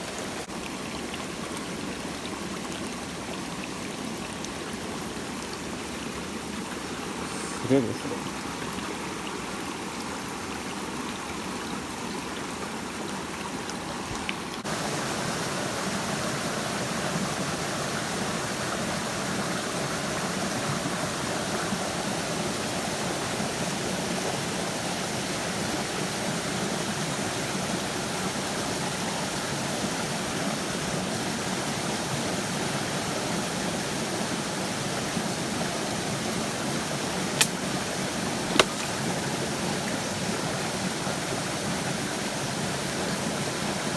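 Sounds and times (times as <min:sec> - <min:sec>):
water rushing over rocks: 0:00.0 - 0:33.3, 0:34.0 - 0:43.9
short sharp clicks: 0:38.5 - 0:38.9.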